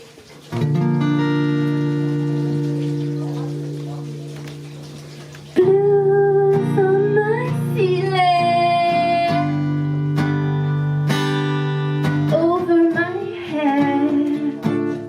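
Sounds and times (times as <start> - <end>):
acoustic guitar strumming chords: 0.5 - 15.0
woman singing: 5.6 - 9.8, 12.3 - 15.0.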